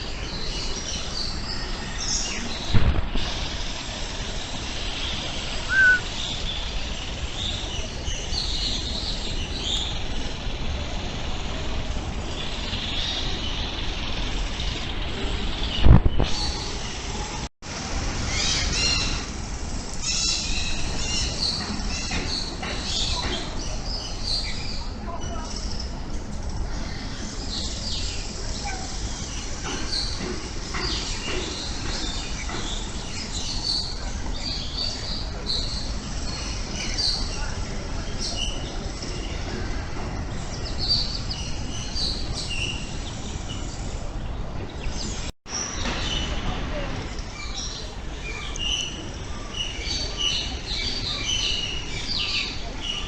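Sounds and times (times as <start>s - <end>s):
steady background hiss: 0.0s - 53.0s
birds chirping and calling: 3.7s - 10.9s, 18.3s - 19.4s, 20.0s - 46.5s, 47.1s - 53.0s
birds chirping and whistling: 4.9s - 10.0s.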